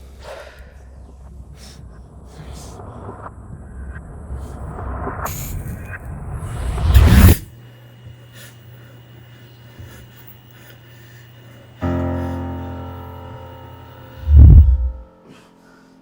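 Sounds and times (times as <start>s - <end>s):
faint low hum: 0.0s - 15.2s
sustained piano chord: 11.8s - 16.0s
loud low boom: 14.2s - 15.1s.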